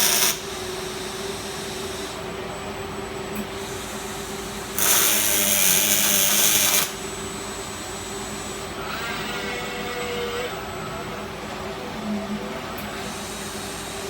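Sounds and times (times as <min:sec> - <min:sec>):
welding arc hissing: 0:00.0 - 0:02.2, 0:03.6 - 0:08.7
machine hum: 0:00.0 - 0:14.0.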